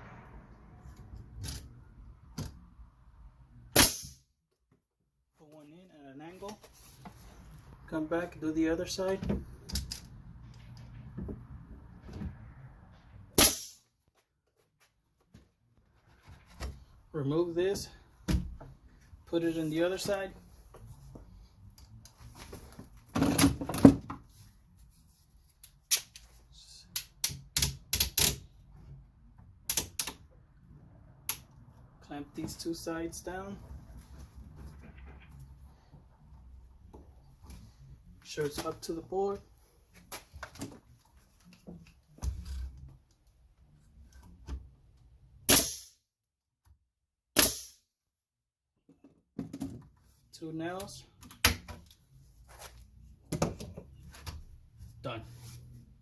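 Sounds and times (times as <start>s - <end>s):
pneumatic nail gun firing: 3.8s - 4.2s, 13.4s - 13.8s, 45.5s - 46.0s, 47.4s - 47.8s.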